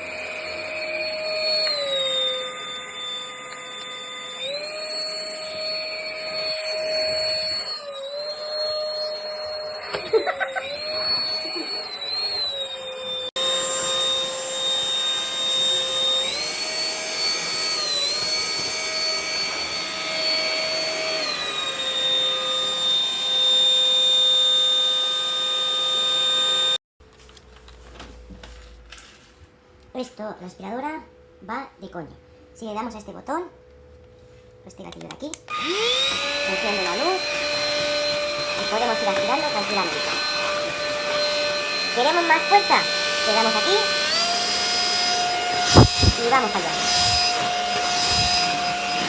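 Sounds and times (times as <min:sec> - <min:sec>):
vacuum cleaner motor whine: 0:00.0 - 0:26.8, 0:35.5 - 0:49.0.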